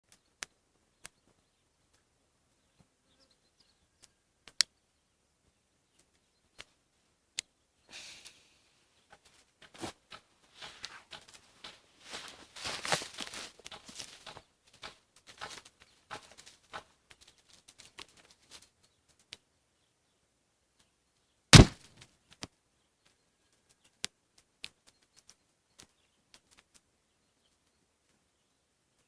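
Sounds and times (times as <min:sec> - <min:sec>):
gas lighter exploding bang: 0:21.6 - 0:21.8
fire crackling and popping: 0:21.6 - 0:22.0.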